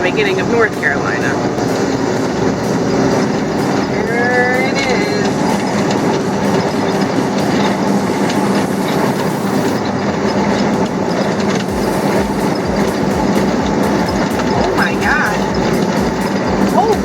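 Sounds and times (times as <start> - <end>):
truck engine and tyres droning: 0.0 - 17.0
low thumps from road joints: 10.4 - 17.0.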